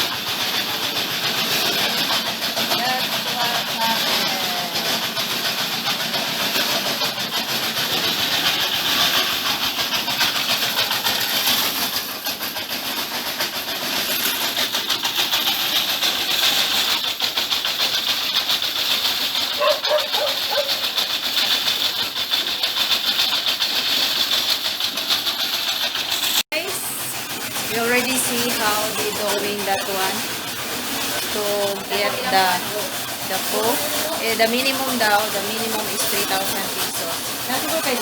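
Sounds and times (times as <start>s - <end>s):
truck engine and suction pump: 0.0s - 38.0s.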